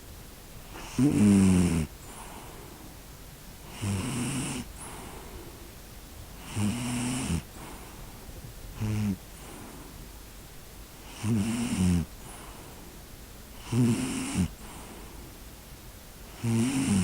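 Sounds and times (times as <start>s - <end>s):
rasping snores: 0.7s - 1.9s, 3.7s - 5.0s, 6.4s - 7.8s, 8.8s - 9.6s, 11.0s - 12.1s, 13.6s - 14.7s, 16.4s - 17.0s.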